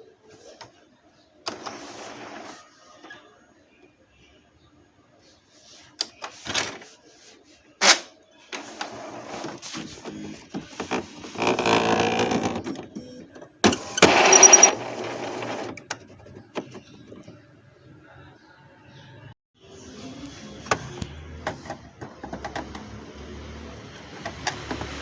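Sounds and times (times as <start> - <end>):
printer carriage whirring and clattering: 1.5 - 2.6, 8.5 - 17.4, 20.6 - 25.0.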